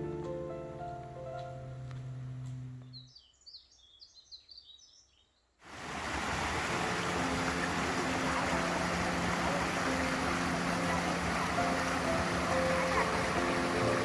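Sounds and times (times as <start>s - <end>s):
background music: 0.0s - 2.8s, 6.8s - 14.0s
bird chirps: 2.8s - 5.6s
stream rushing: 5.6s - 14.0s.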